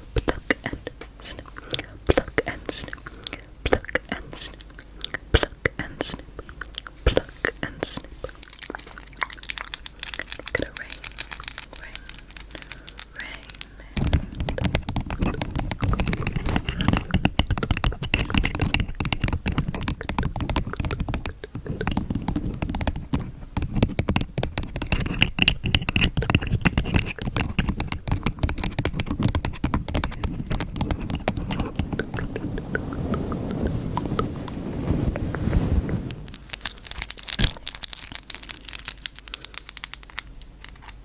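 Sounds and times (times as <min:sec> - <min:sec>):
crackling and scratching: 0:00.0 - 0:41.0
handling rumble: 0:27.0 - 0:36.4.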